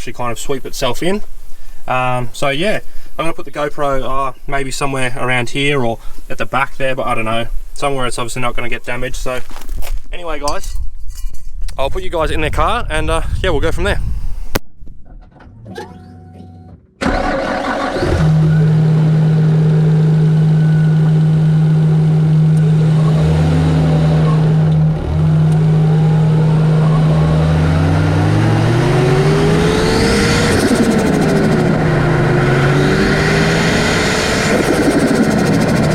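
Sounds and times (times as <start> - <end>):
car engine starting and running: 14.9 - 35.9.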